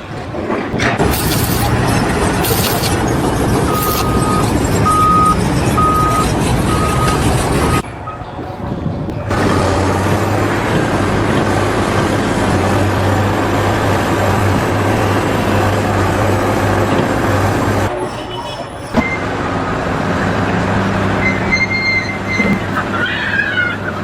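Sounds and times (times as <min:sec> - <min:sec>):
large engine running: 0:00.0 - 0:18.0, 0:19.0 - 0:23.0
short high-pitched tones: 0:03.7 - 0:07.8.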